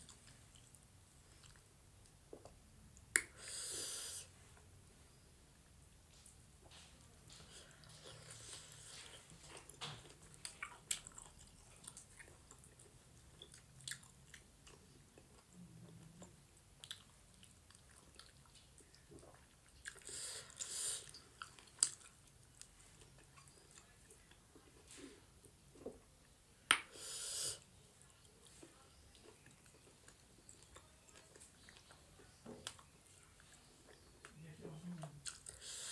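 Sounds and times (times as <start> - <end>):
wet mouth clicks: 2.0 - 3.4
close chewing and biting: 6.7 - 25.1.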